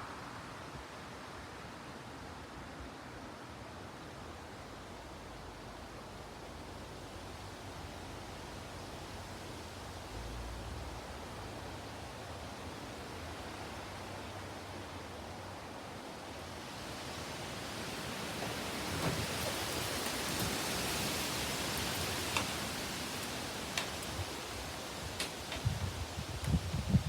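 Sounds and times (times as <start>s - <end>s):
wind gusting through trees: 0.0s - 27.0s
leaves rustling: 16.0s - 27.0s
faint light ticks: 21.7s - 24.3s, 25.1s - 25.7s.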